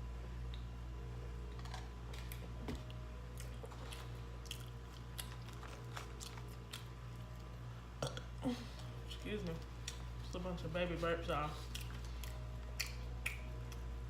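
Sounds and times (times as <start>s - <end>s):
low hum: 0.0s - 14.0s
chewing food: 1.5s - 8.2s, 11.5s - 13.9s.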